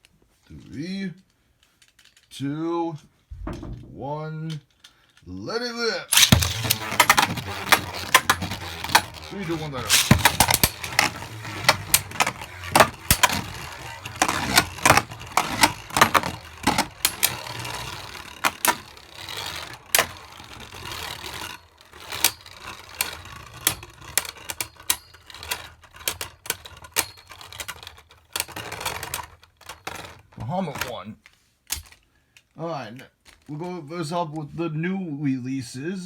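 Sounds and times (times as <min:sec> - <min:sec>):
spinning tops clacking: 0:06.2 - 0:30.2
spinning tops whirring: 0:06.2 - 0:30.2.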